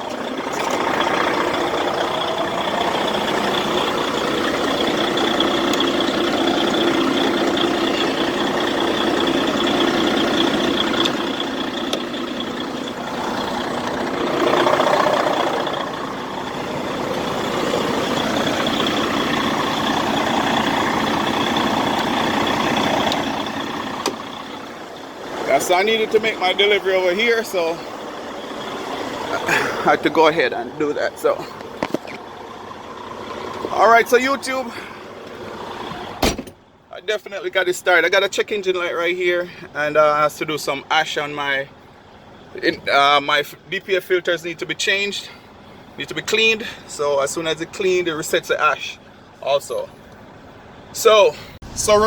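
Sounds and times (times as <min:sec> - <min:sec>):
diesel engine running: 0:00.0 - 0:52.0.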